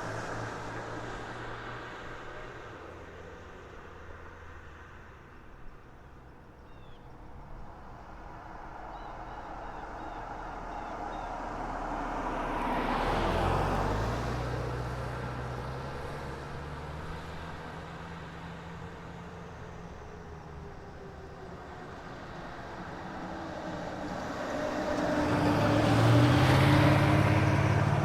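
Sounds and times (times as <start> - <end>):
car driving past: 7.6 - 20.2, 22.2 - 28.0.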